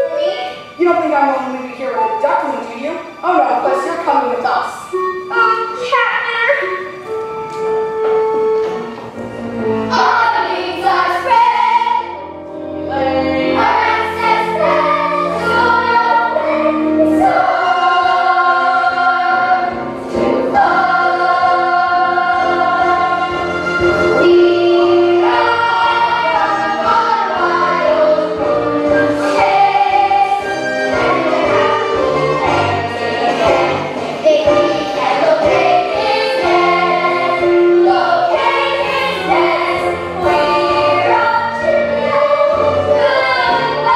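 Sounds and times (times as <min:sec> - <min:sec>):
instrumental accompaniment: 0:00.0 - 0:43.9
group singing in chorus: 0:12.9 - 0:43.9.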